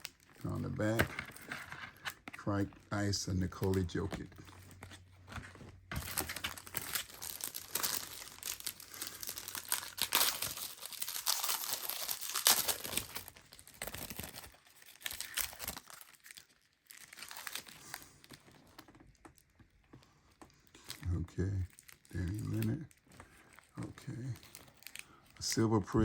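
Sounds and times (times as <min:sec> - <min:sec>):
wrapper tearing and crinkling: 0:00.0 - 0:05.0, 0:05.9 - 0:19.5, 0:20.7 - 0:26.0.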